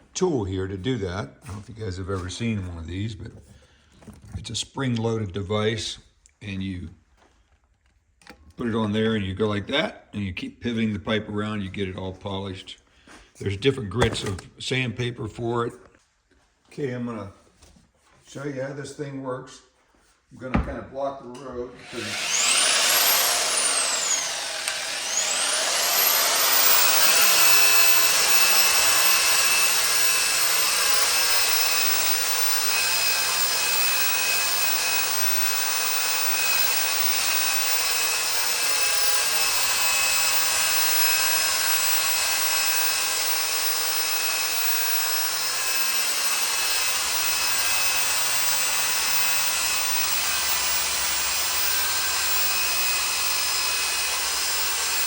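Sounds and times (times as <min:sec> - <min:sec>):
belt sander whining: 0:21.7 - 0:55.0.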